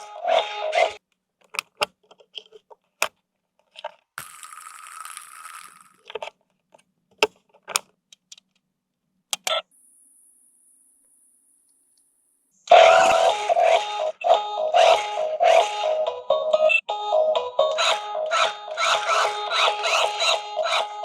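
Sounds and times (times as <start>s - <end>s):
hard plastic clicking: 1.1s - 4.0s, 6.1s - 8.7s.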